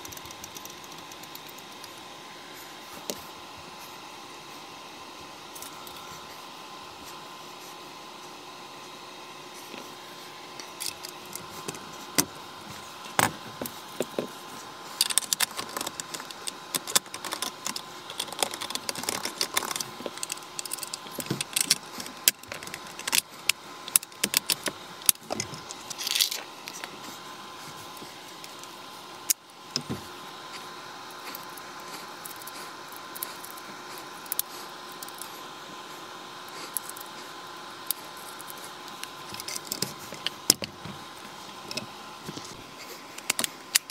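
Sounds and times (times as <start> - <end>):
rifle clicking and rattling: 15.0 - 23.3.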